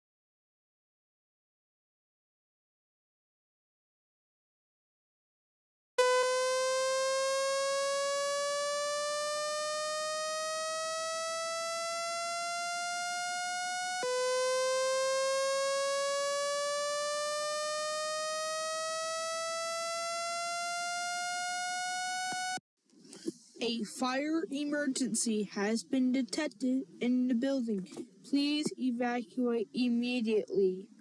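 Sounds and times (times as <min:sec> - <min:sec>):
fire alarm rising siren tone: 0:06.0 - 0:22.6.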